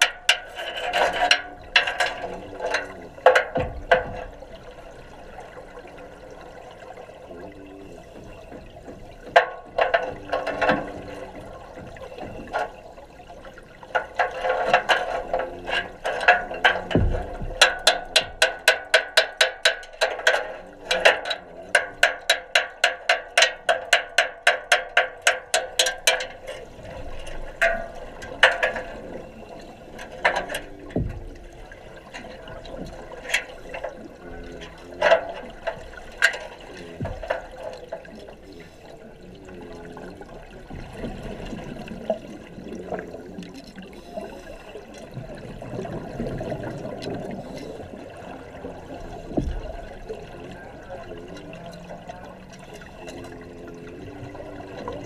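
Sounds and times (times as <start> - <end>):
water bubbling underwater: 0.0 - 55.0
loud knocks: 16.6 - 19.9.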